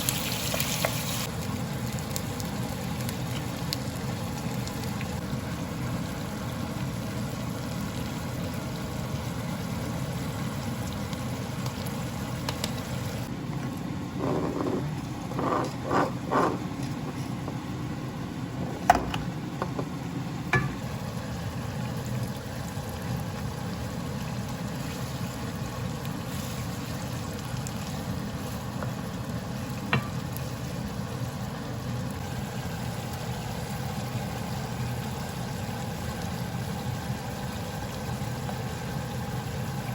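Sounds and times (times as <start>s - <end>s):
food sizzling in a frying pan: 0.0s - 13.3s, 20.5s - 39.9s
stirring scrapes: 14.2s - 17.6s.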